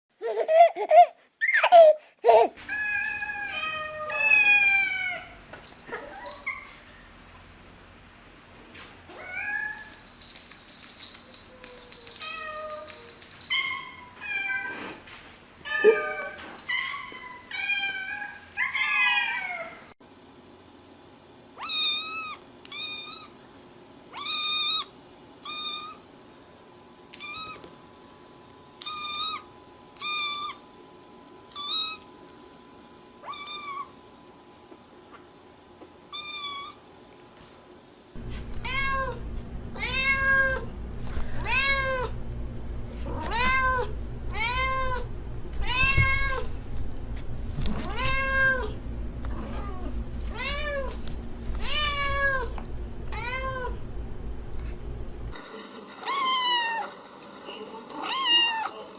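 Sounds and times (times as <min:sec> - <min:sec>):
cats and kittens meowing: 0:02.6 - 0:07.1, 0:11.3 - 0:15.0, 0:15.6 - 0:19.9, 0:33.2 - 0:34.0, 0:38.3 - 0:39.2, 0:39.8 - 0:40.7, 0:41.3 - 0:42.2, 0:43.0 - 0:46.5, 0:47.7 - 0:51.0, 0:51.6 - 0:53.8.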